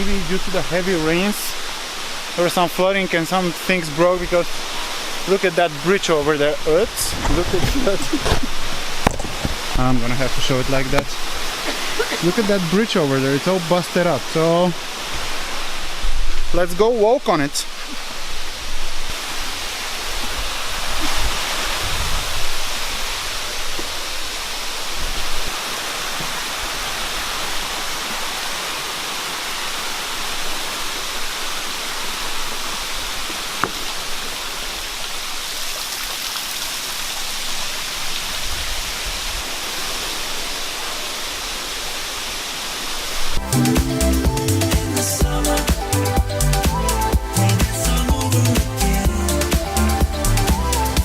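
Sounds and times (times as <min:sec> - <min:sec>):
waterfall rushing: 0:00.0 - 0:51.0
low microphone rumbles: 0:05.9 - 0:11.6.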